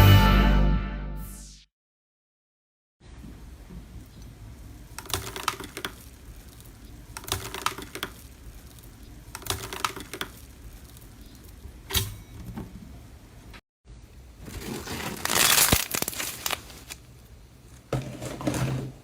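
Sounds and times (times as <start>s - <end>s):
sharp slime crack: 15.2s - 16.7s.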